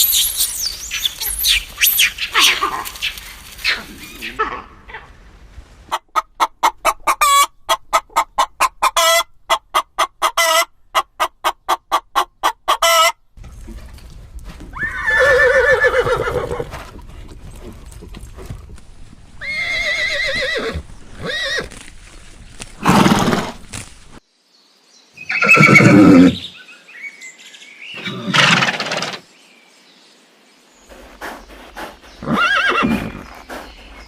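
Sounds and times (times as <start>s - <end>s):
horses whinnying: 14.7s - 18.5s, 19.4s - 21.7s, 22.8s - 23.6s, 25.3s - 26.4s, 28.0s - 29.2s, 32.2s - 33.6s.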